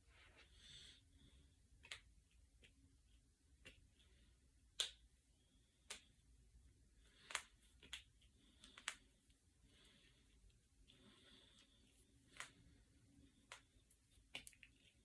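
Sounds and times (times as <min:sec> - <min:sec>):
knuckles cracking: 0:05.8 - 0:06.1, 0:07.1 - 0:09.4, 0:11.6 - 0:12.8, 0:13.4 - 0:15.0.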